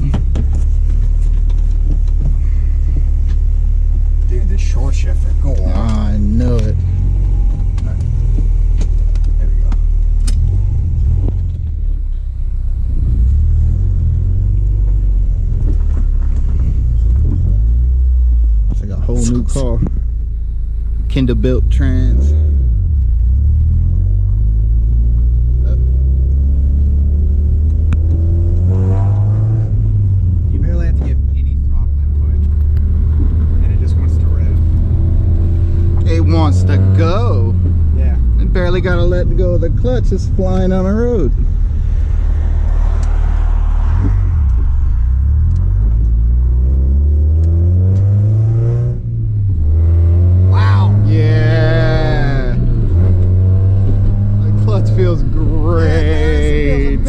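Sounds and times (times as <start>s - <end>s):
car engine and road drone: 0.0s - 57.0s.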